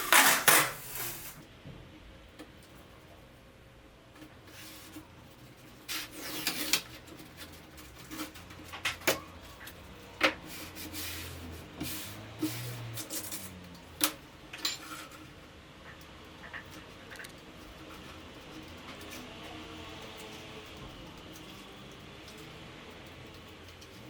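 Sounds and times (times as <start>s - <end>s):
scraping: 0.0s - 1.4s.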